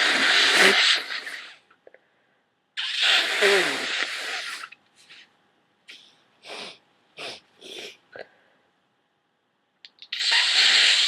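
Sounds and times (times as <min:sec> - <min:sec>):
sniffing through congested nose: 0:00.0 - 0:01.6, 0:02.8 - 0:05.3, 0:05.9 - 0:08.0.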